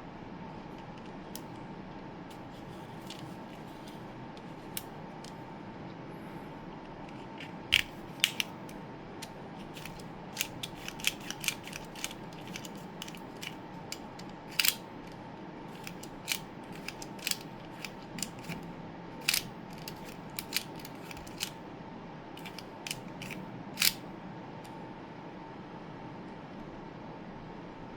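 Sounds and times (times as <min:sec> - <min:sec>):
faint steady hum: 0:00.0 - 0:27.9
plastic knife mechanism clicking: 0:07.8 - 0:08.5, 0:09.2 - 0:15.2, 0:15.8 - 0:18.6, 0:19.2 - 0:21.6, 0:22.4 - 0:24.0.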